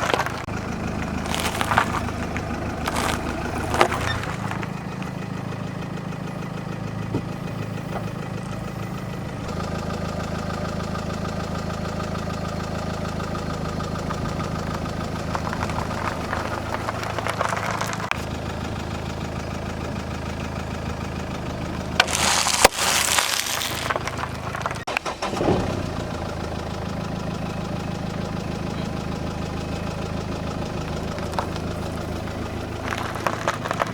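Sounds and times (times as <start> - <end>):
object crushed under tyre: 0.0 - 0.5, 1.1 - 4.8, 15.3 - 18.2, 22.0 - 24.9, 32.8 - 33.9
car engine idling: 0.0 - 33.9.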